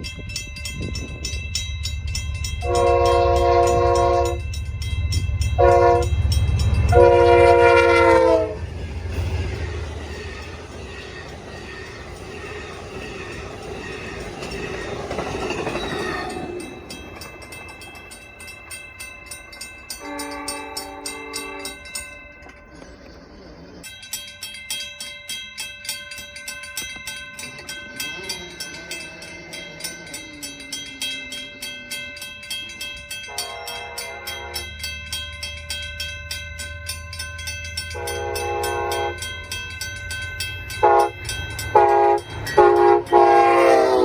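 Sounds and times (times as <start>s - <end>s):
train wheels rushing past: 0.0s - 23.9s, 26.7s - 44.0s
wheels clicking over rail joints: 0.0s - 44.0s
train air horn chord: 2.6s - 4.4s, 5.6s - 6.2s, 6.9s - 8.7s, 20.0s - 21.8s, 33.3s - 34.7s, 37.9s - 39.2s, 40.8s - 44.0s.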